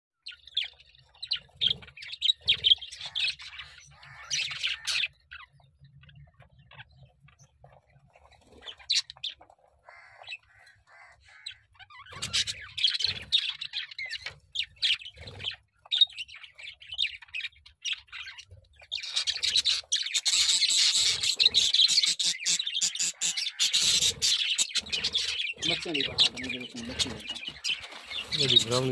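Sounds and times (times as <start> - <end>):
pet birds chirping and squawking: 0.2 - 28.9.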